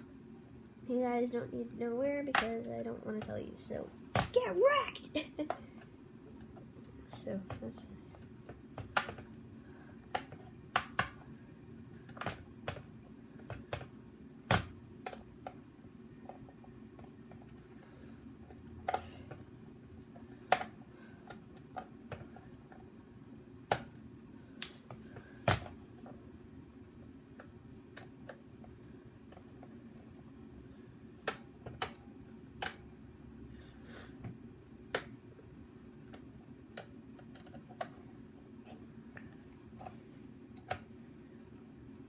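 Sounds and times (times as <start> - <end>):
plastic parts clicking and knocking: 12.1 - 15.6, 36.1 - 38.1.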